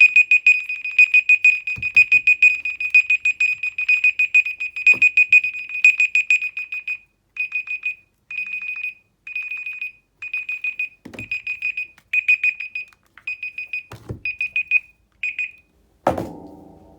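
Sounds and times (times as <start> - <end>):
dull knocks: 16.1 - 16.9.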